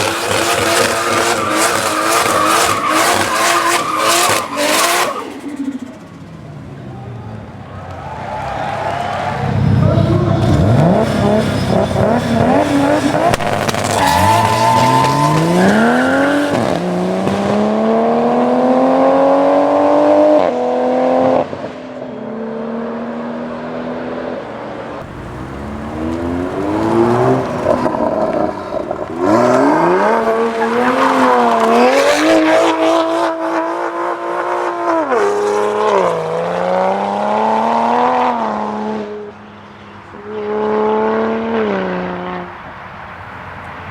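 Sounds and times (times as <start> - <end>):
car engine revving hard: 0.0 - 5.6, 10.1 - 21.5, 25.0 - 39.2.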